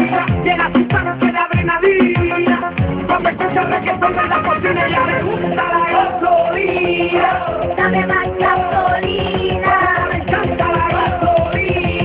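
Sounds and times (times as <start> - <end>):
dance music: 0.0 - 12.0
deep kick drums: 0.3 - 3.4.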